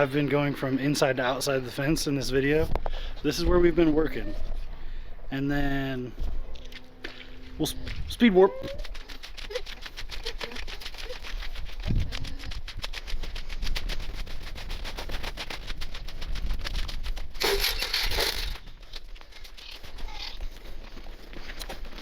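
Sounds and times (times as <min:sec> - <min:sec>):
sped-up footsteps clicking: 0:06.6 - 0:22.0.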